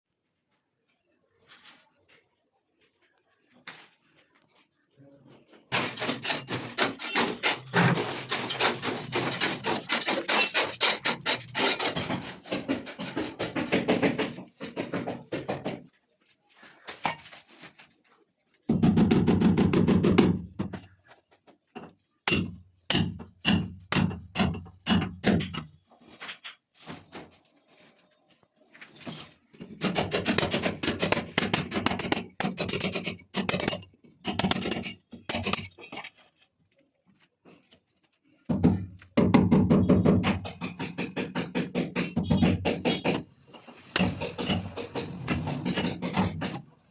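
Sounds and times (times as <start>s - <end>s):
rapid hammering: 29.7s - 35.7s, 38.5s - 43.3s.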